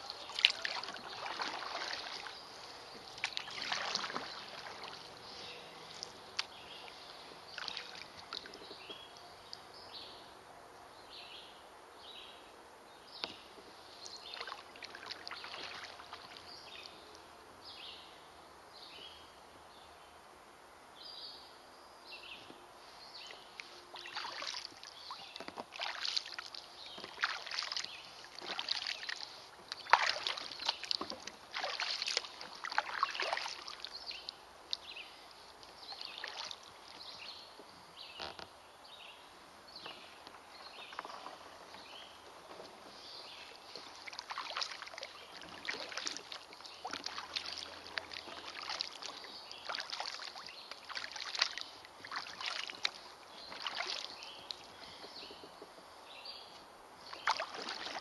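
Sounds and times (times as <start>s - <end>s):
paddle strokes splashing water: 0.0s - 9.1s, 14.0s - 17.0s, 23.2s - 35.0s, 35.7s - 38.2s, 39.8s - 55.7s, 57.1s - 58.0s.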